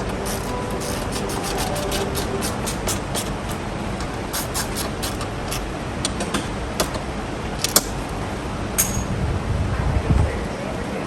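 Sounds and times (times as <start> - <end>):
steady background noise: 0.0 - 11.0
hand tool clicks and taps: 0.3 - 3.6, 4.4 - 5.7, 6.8 - 7.0.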